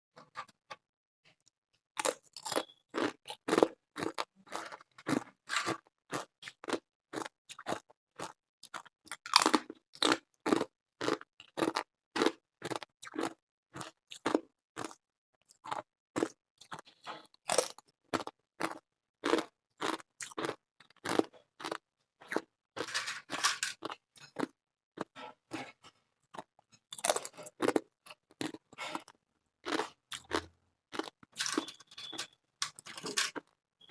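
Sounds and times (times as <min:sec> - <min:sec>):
ice chips crunching: 0:22.8 - 0:23.9, 0:31.0 - 0:33.4.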